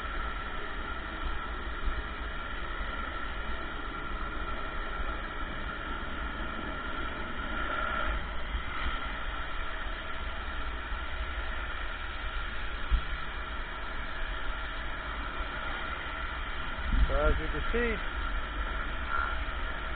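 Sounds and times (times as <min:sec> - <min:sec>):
pressure washer spraying water: 0:07.4 - 0:19.9.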